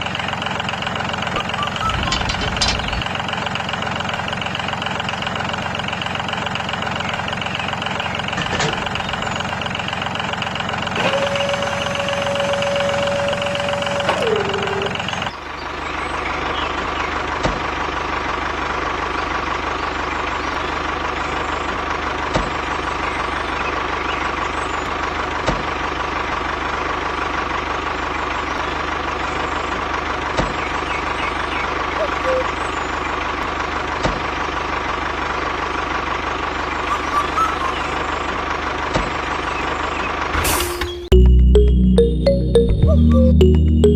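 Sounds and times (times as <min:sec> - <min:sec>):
tractor engine running: 0:00.0 - 0:43.9
held tone sliding down in pitch: 0:32.0 - 0:32.5, 0:36.9 - 0:38.1, 0:41.1 - 0:43.9.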